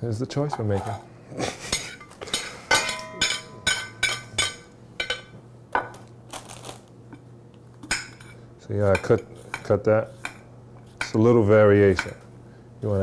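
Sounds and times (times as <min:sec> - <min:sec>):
knife clinking on ceramic plate: 0:01.7 - 0:06.0.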